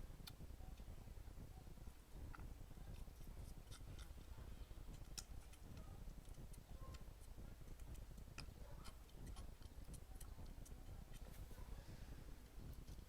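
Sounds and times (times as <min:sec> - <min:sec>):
goats eating with small clicks: 0:01.6 - 0:11.6.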